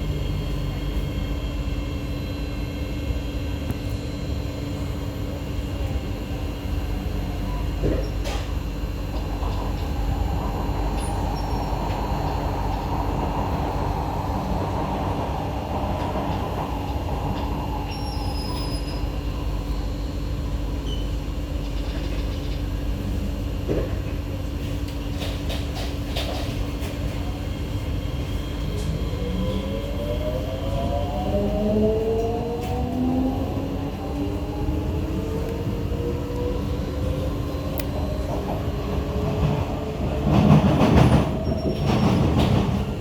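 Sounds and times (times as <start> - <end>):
train rumbling on track: 0.0 - 43.0.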